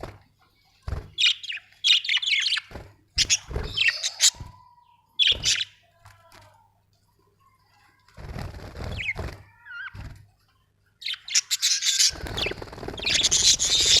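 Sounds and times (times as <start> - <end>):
budgerigars chirping and chattering: 1.2 - 4.6, 5.2 - 5.7, 11.0 - 14.0.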